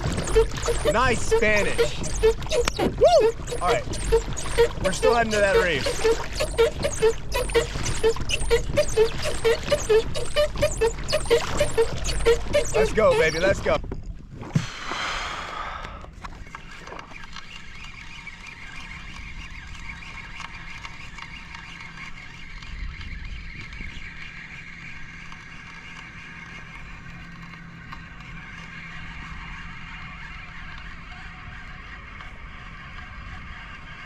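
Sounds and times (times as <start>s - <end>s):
kayak drive whirring: 0.0s - 34.0s
water running along hull: 0.0s - 34.0s.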